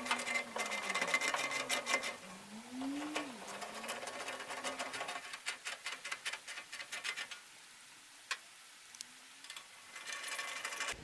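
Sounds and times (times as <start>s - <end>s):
tools clicking and rattling: 0.0s - 2.3s.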